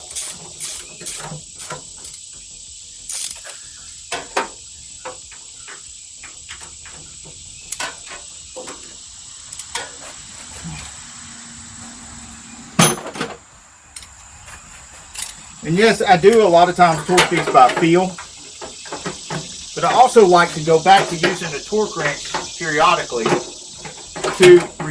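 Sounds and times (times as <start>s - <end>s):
high-pitched hiss: 0.0s - 24.9s
sharp clicks and knocks: 16.2s - 24.9s.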